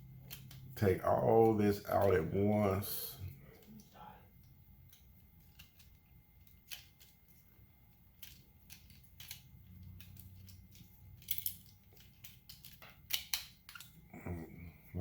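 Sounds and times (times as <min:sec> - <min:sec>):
plastic parts clicking and tapping: 0:00.0 - 0:00.8, 0:03.5 - 0:07.4, 0:08.1 - 0:14.1
low hum: 0:13.9 - 0:15.0.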